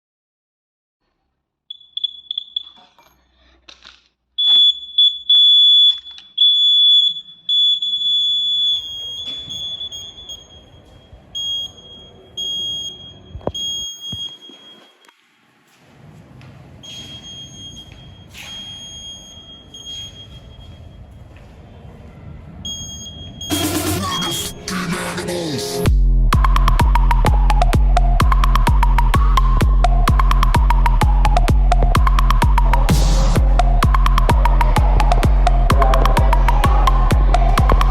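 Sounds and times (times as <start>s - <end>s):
alarm buzzer beeping: 1.7s - 3.0s, 4.4s - 15.1s, 16.8s - 21.0s, 22.6s - 24.8s.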